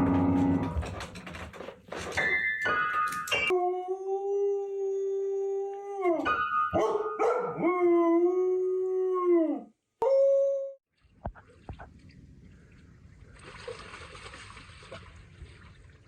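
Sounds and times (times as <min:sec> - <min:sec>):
dog howling: 0:03.5 - 0:10.5.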